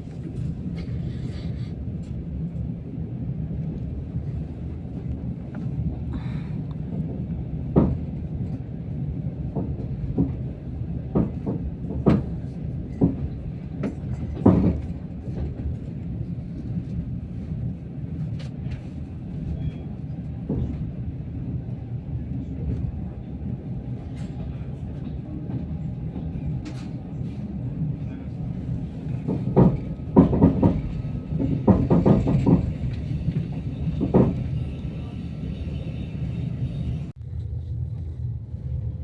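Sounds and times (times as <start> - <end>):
train carriage rumbling: 0.0 - 39.0
wheels knocking and clacking: 28.7 - 37.1.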